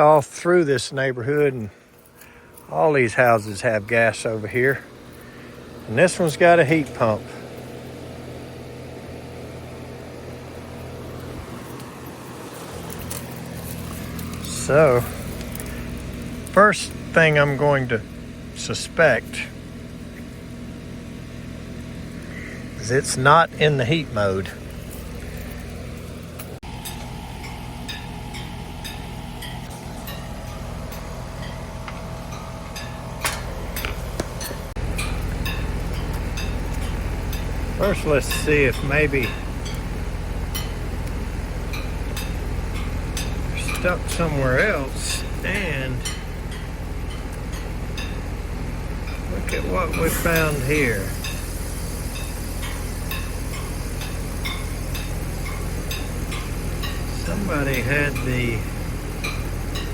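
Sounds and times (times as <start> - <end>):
heat pump humming: 0.0 - 59.9
low electrical buzz: 0.0 - 59.9
regular ticking: 26.4 - 59.9.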